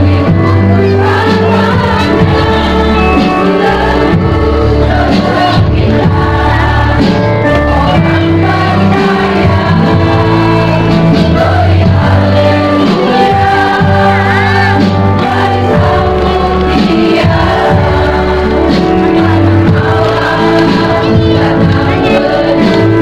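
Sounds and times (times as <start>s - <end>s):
background music with bass line: 0.0s - 23.0s
person singing: 0.0s - 23.0s.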